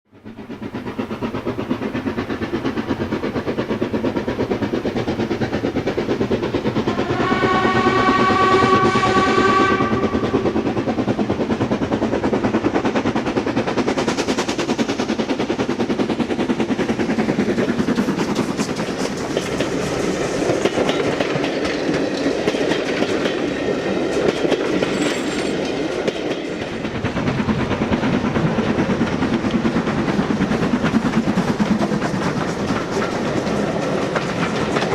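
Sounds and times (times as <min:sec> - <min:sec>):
steam train clatter: 0:00.1 - 0:34.9
steam whistle blowing: 0:06.9 - 0:10.6.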